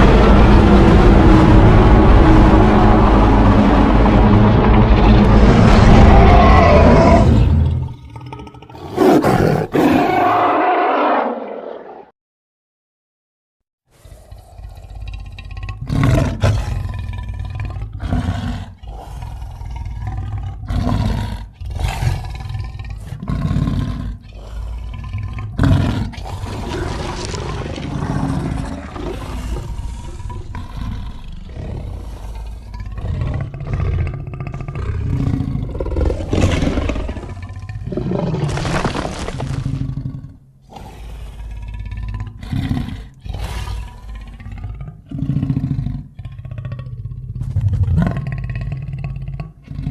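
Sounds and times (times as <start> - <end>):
tiger growling: 2.6 - 12.1, 14.0 - 49.9.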